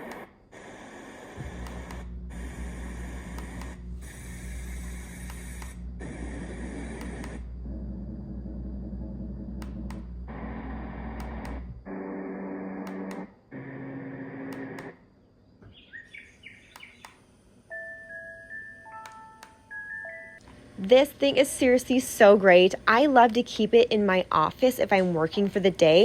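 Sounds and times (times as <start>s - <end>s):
white noise hissing: 0.0s - 7.7s
birdsong chirps: 15.2s - 19.1s
chiming melody: 17.7s - 20.4s.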